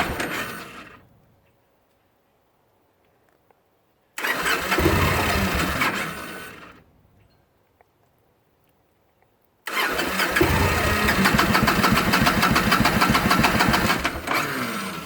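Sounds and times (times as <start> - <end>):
engine starter cranking: 0.0 - 1.0, 4.2 - 6.8, 9.7 - 15.0.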